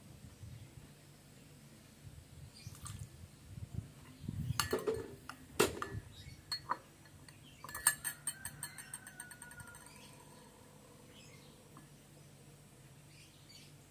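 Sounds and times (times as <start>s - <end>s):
spoon clinking against glass: 4.5s - 5.1s, 6.5s - 10.4s.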